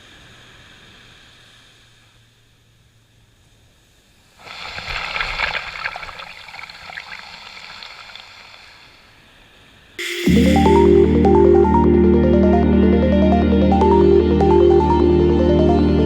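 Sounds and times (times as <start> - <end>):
wave washing up beach: 4.2 - 9.5.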